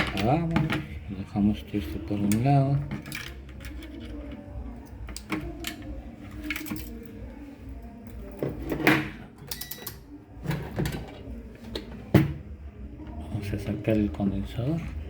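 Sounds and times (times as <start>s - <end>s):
tools clicking and knocking on workbench: 0.0s - 0.9s, 2.1s - 7.1s.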